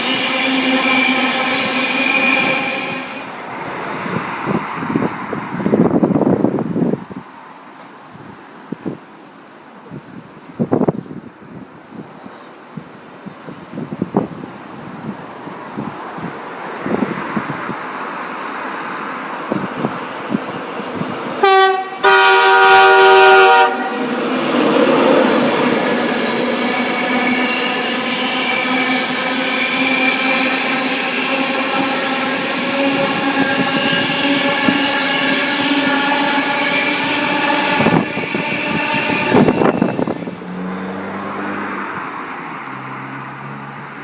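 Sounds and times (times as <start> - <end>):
train horn: 0.0 - 3.3, 21.4 - 24.1, 27.0 - 40.6
train passing with humming motors: 0.0 - 11.2, 11.8 - 44.0
wind buffeting microphone: 3.6 - 7.3, 9.8 - 18.0, 19.4 - 21.4, 30.5 - 40.8.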